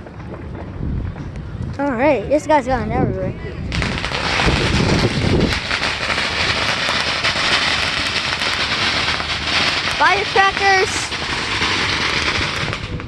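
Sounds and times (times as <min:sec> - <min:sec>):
firecrackers popping: 0:03.7 - 0:13.0.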